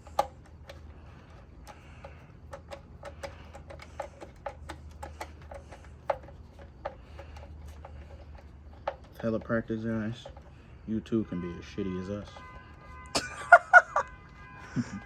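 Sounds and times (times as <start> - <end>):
light clicks and taps of parts: 0.0 - 10.6.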